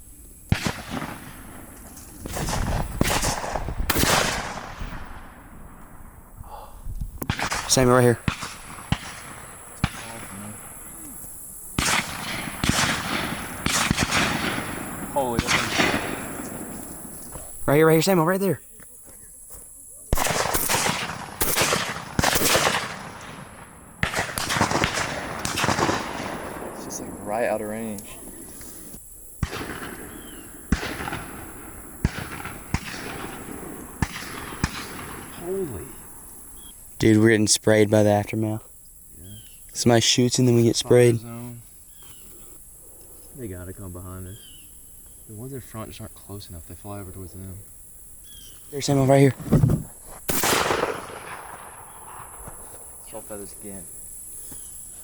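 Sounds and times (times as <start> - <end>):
shotgun shots: 0.5 - 6.0, 7.2 - 10.9, 11.7 - 17.2, 20.1 - 27.5, 29.4 - 36.2, 50.3 - 52.7.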